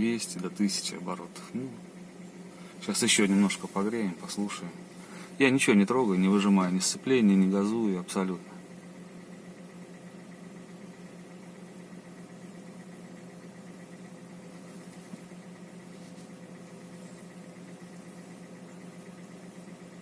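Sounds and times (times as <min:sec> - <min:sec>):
car engine idling with knock: 0:08.4 - 0:20.0.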